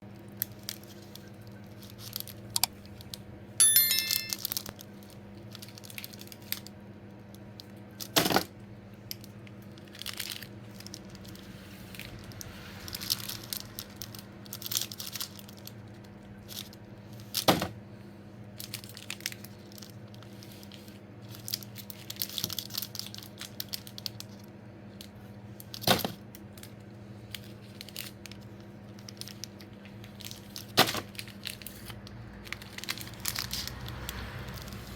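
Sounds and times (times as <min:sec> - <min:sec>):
brief high-pitched ring: 0:03.6 - 0:04.6
wrappers crinkling and tearing: 0:05.0 - 0:06.7, 0:09.1 - 0:17.5, 0:18.6 - 0:34.9.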